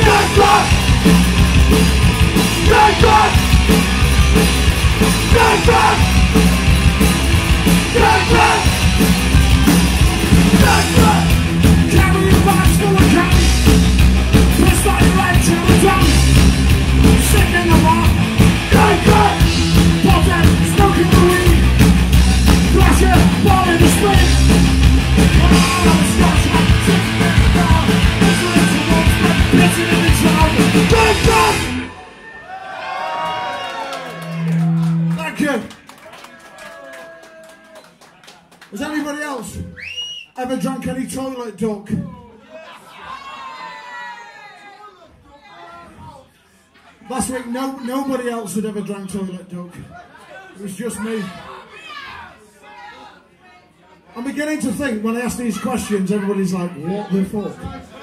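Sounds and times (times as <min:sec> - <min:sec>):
person shouting singing: 0:00.0 - 0:00.9, 0:02.5 - 0:03.7, 0:05.2 - 0:06.3, 0:07.8 - 0:08.9, 0:10.5 - 0:13.4, 0:17.2 - 0:21.6, 0:25.3 - 0:31.8
punk rock band playing: 0:00.0 - 0:32.4.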